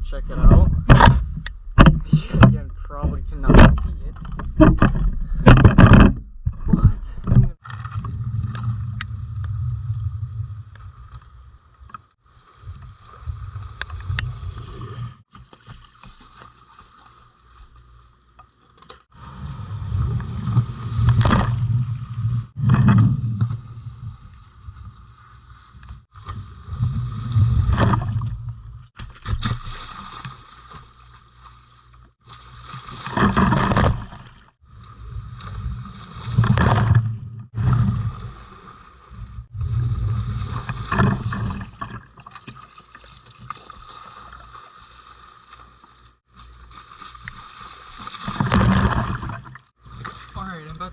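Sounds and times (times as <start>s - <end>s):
low rumbles on microphone: 0.0s - 11.0s.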